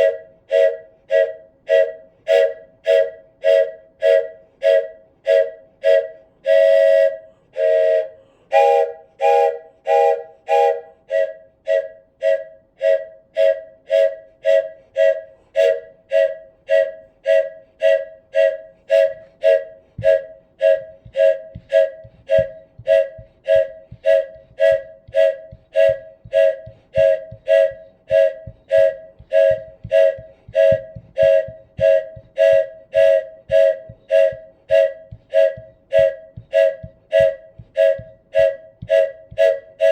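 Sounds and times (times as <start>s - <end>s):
wooden train whistle toots: 0.0s - 39.9s
low regular thumps: 19.0s - 39.9s.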